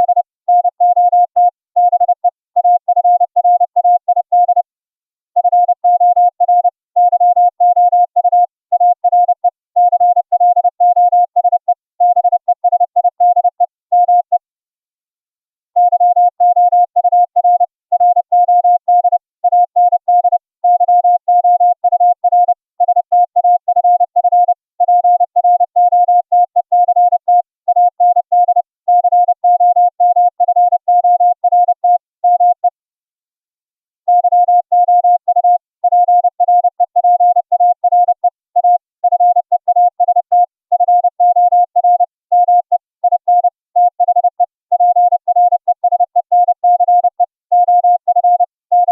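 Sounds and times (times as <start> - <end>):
morse code tone: 0.0 - 4.6, 15.8 - 32.7, 34.1 - 48.9.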